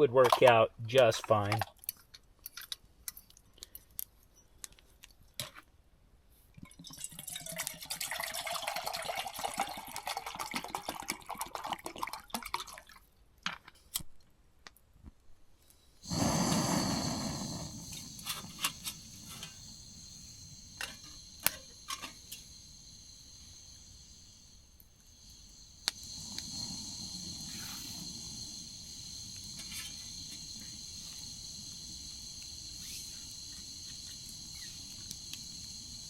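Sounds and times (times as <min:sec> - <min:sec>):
water pouring into container: 0:06.7 - 0:13.0
loud hiss with high whine: 0:16.0 - 0:36.0.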